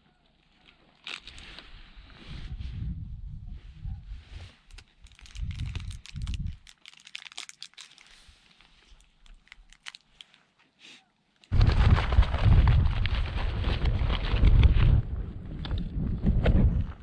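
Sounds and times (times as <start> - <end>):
wind buffeting microphone: 2.3 - 6.7, 11.5 - 17.0
small crackling clicks: 4.7 - 10.4.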